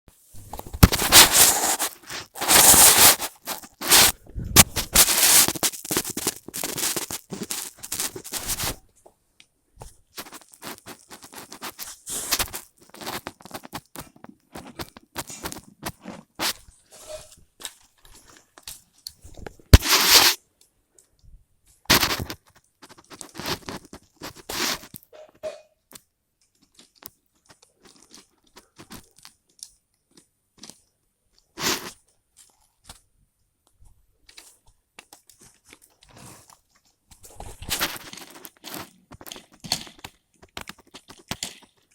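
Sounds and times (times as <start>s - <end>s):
things being handled clicking: 0.4s - 8.8s, 34.2s - 41.9s.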